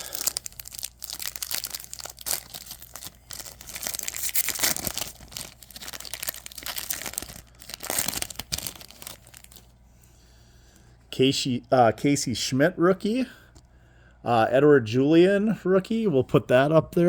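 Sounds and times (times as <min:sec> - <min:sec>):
wrapper tearing and crinkling: 0:00.0 - 0:09.7.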